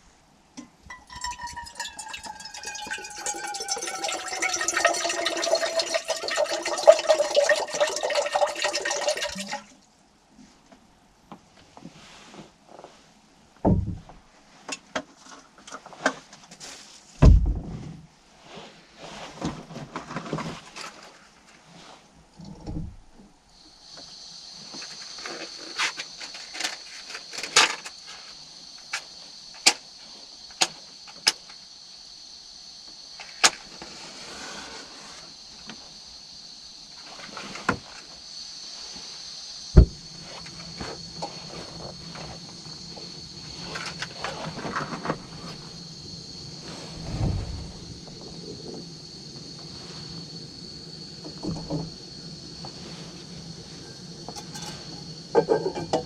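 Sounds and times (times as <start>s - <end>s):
steady high-pitched hiss: 0.0s - 56.0s
dull thumps: 13.6s - 14.2s, 17.2s - 18.0s, 39.8s - 40.1s
objects clicking and knocking: 54.3s - 56.0s.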